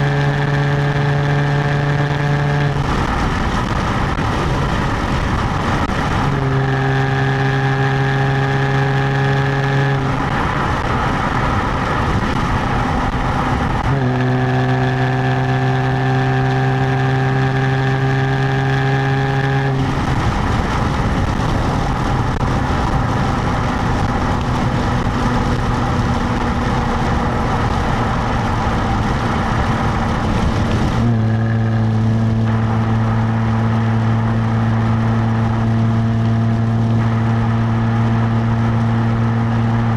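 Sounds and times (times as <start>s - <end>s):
car engine drone: 0.0s - 39.9s
rushing noise: 19.1s - 39.9s.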